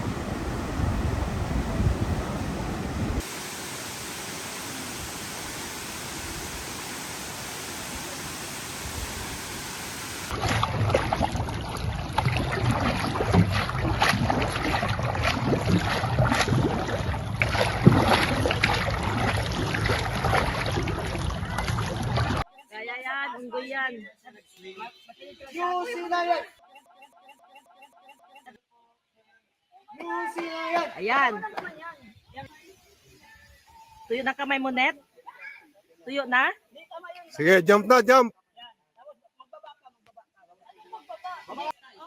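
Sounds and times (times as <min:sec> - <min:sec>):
wind on microphone: 0:00.0 - 0:03.3
sea waves: 0:00.0 - 0:22.4.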